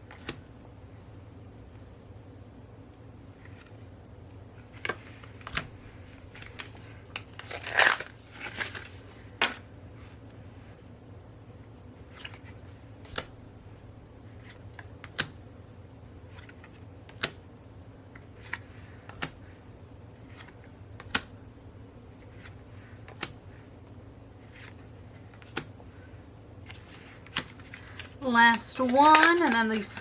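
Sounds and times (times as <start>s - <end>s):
card rustles: 4.6s - 10.3s, 12.0s - 13.3s, 16.3s - 16.9s, 24.4s - 25.7s, 26.6s - 30.0s
cards tapping down: 20.2s - 21.4s, 24.5s - 25.8s, 26.7s - 30.0s.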